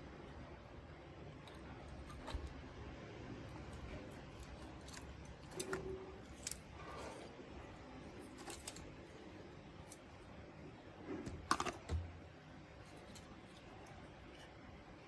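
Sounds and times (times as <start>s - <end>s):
faint low hum: 0.0s - 15.0s
small parts clicking and tapping: 3.4s - 6.8s, 8.2s - 10.4s.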